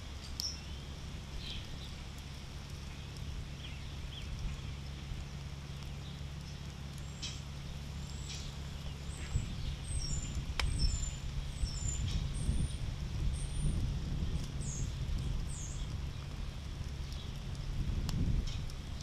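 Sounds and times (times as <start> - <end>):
steady low rumble: 0.0 - 19.0
songbird chirping: 5.8 - 13.8.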